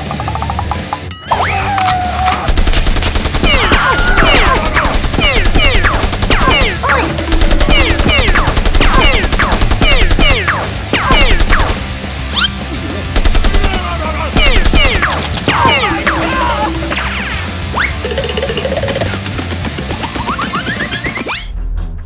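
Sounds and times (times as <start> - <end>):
machine-gun fire: 2.5 - 12.0, 13.2 - 16.1.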